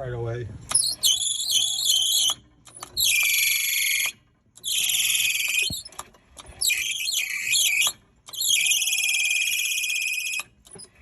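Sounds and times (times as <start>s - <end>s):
vehicle drive high-pitched squealing: 0.8s - 2.4s, 3.0s - 5.9s, 6.6s - 10.4s.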